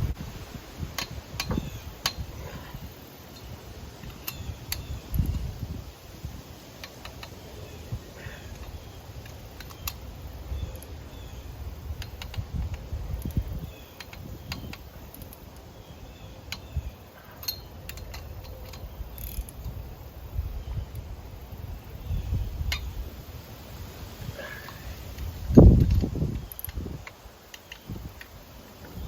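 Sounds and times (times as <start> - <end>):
metallic ratchet clicks: 17.4 - 19.8.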